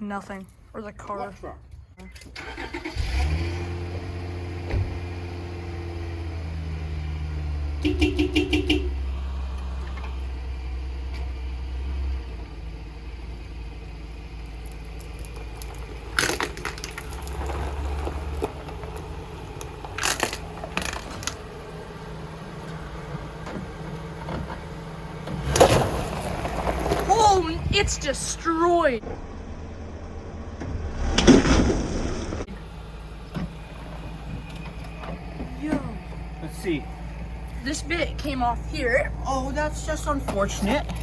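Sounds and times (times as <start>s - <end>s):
car engine idling: 2.4s - 30.9s, 32.5s - 41.0s
plastic cracking under tire: 14.5s - 21.4s, 25.4s - 27.1s.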